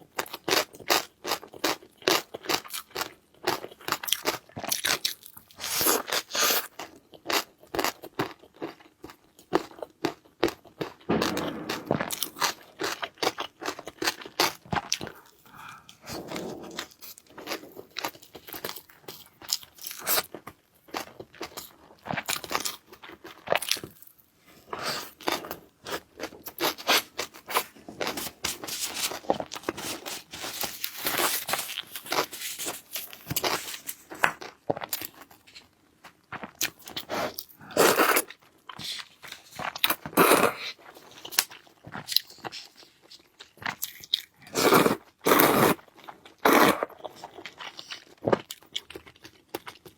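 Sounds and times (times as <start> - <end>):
chewing and crunching food: 0.0 - 11.3, 12.1 - 49.9.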